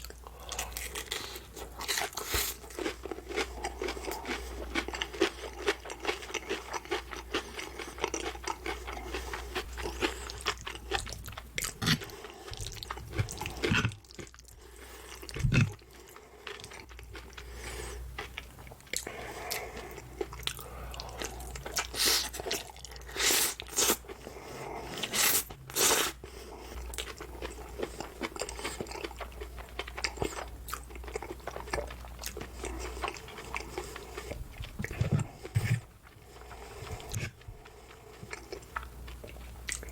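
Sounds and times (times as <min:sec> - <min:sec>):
crunchy bites and chewing: 0:00.0 - 0:14.6.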